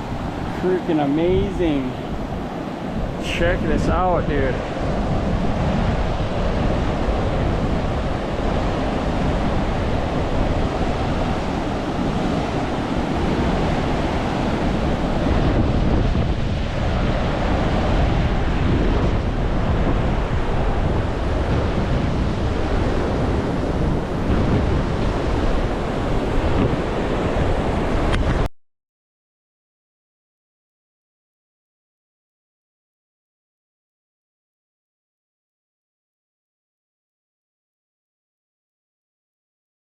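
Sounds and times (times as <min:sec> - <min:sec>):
wind buffeting microphone: 0:00.0 - 0:28.5.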